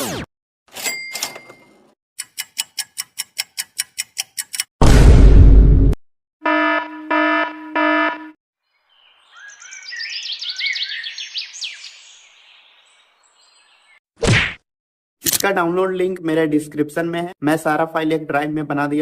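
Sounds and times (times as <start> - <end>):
songbirds chirping: 8.6 - 14.0.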